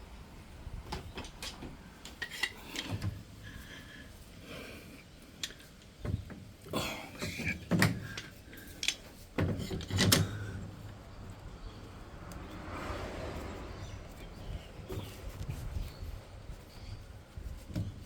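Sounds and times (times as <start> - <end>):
hard parts knocking and rattling: 5.4 - 11.0.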